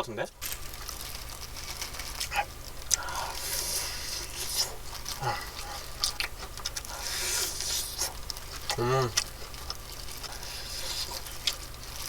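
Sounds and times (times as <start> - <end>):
chewing crispy fried chicken: 0.3 - 12.0
wet mouth sounds: 2.2 - 11.8.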